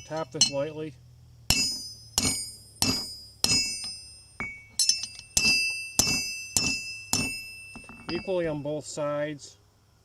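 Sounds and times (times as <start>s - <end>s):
hammer tapping metal on anvil: 0.0s - 0.8s, 1.5s - 8.7s.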